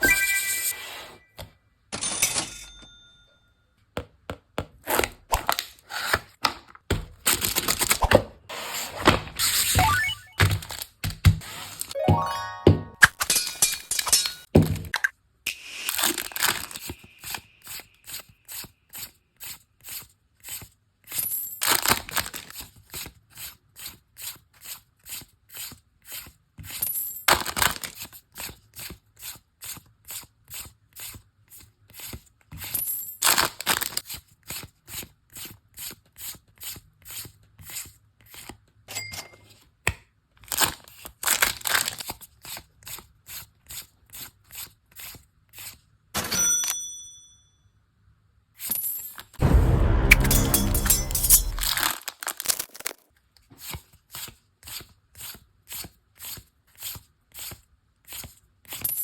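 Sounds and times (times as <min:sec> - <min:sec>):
foil pack tearing open: 0:07.2 - 0:08.0, 0:15.8 - 0:17.4, 0:33.3 - 0:34.0, 0:40.4 - 0:42.2, 0:51.8 - 0:53.0.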